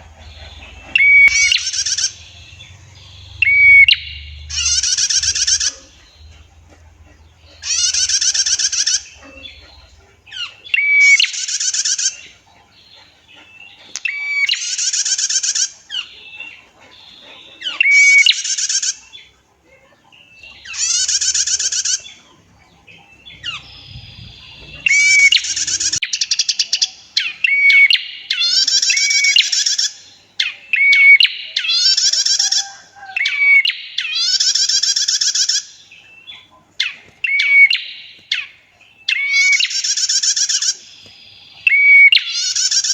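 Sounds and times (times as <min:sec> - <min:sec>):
bird buzzy trills: 0:00.0 - 0:12.4, 0:22.8 - 0:26.8.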